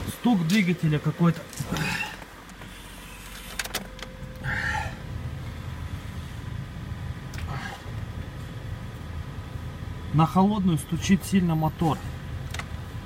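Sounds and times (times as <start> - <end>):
diesel engine idling rough: 0.0 - 13.0.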